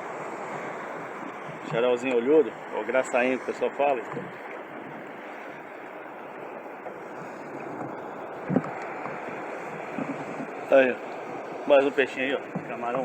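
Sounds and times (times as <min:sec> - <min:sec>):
sea water rushing: 0:00.0 - 0:13.0
wind: 0:00.0 - 0:13.0.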